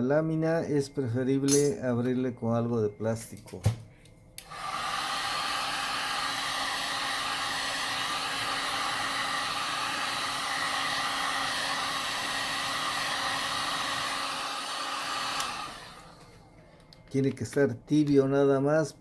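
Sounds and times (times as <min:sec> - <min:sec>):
hot-air blower rushing: 0:04.4 - 0:16.4.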